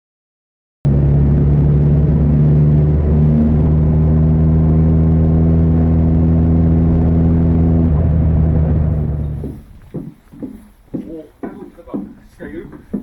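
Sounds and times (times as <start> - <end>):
engine humming steadily: 0.9 - 9.7.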